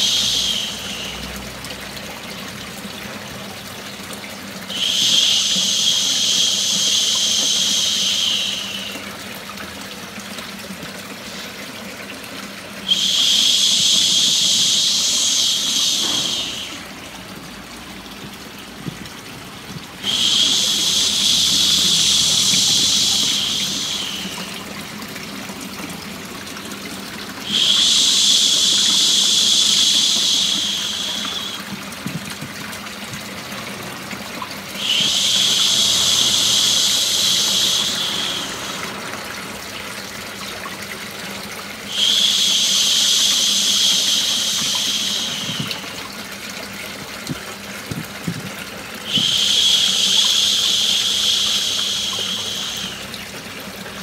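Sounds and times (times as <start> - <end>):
running water: 0.0 - 54.0
person shushing: 12.9 - 16.9.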